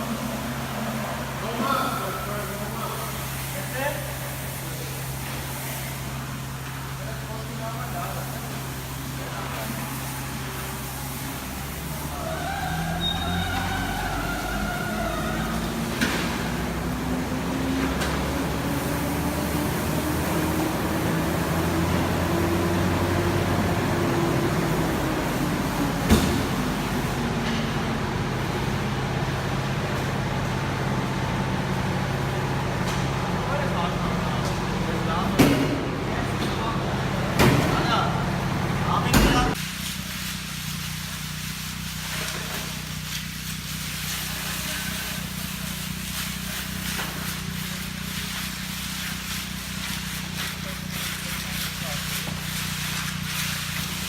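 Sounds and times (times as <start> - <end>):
hiss: 0.0 - 27.2, 39.5 - 54.0
heavy truck engine running: 10.1 - 39.7.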